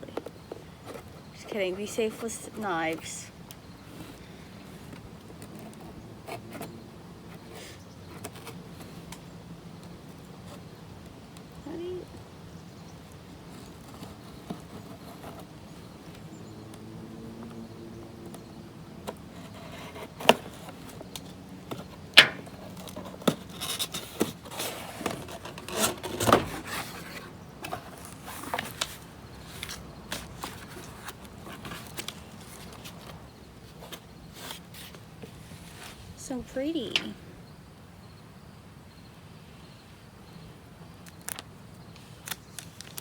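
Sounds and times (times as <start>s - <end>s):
packaging crinkling and scraping: 19.0s - 36.1s, 41.0s - 43.0s
packaging tearing: 41.0s - 43.0s.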